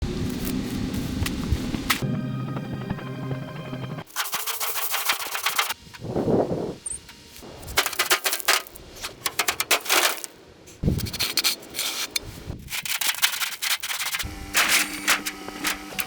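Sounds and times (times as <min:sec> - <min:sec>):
steady machine hum: 0:00.0 - 0:09.6, 0:14.2 - 0:16.0
scraping and rubbing: 0:04.1 - 0:05.8, 0:07.4 - 0:16.0.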